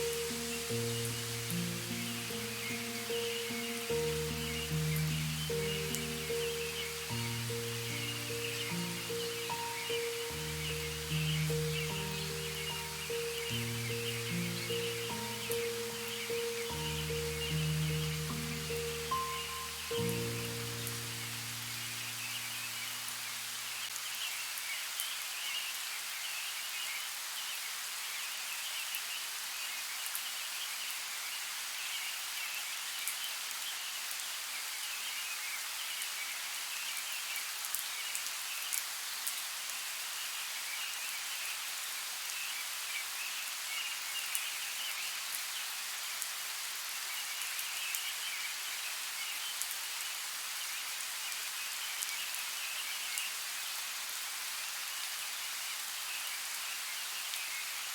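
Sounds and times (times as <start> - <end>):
high chirring insect chorus: 0.0 - 23.5
rain on foliage: 0.0 - 57.9.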